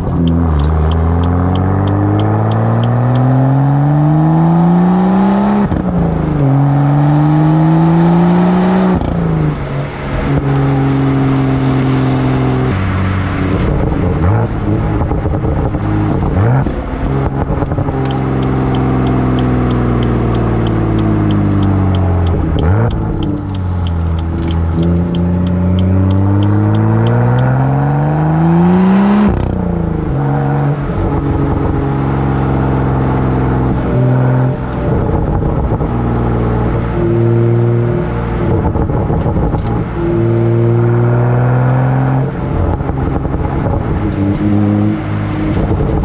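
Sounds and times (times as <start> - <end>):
car exhaust revving: 0.0 - 46.0
hiss at gearshift: 23.4 - 24.7, 26.1 - 28.0.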